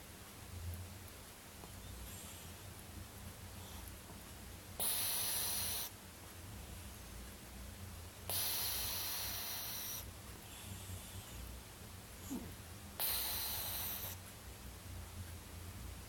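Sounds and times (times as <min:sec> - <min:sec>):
cat snoring: 0:04.8 - 0:05.9, 0:08.3 - 0:10.0, 0:12.2 - 0:14.2.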